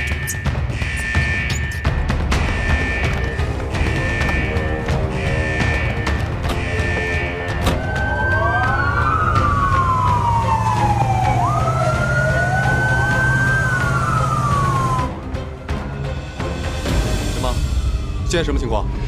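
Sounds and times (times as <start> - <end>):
fire engine sirens wailing: 2.4 - 15.8, 17.3 - 19.0.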